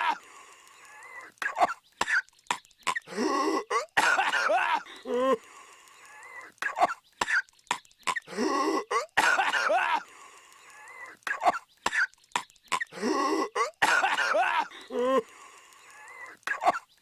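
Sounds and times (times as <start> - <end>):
voiced gasp: 0.0 - 2.2, 3.0 - 3.8, 4.5 - 7.4, 12.8 - 16.6
cartoon character coughing: 1.4 - 2.2, 2.9 - 5.3, 6.6 - 7.4, 8.1 - 10.0, 11.3 - 12.1, 12.7 - 15.2, 16.5 - 16.9.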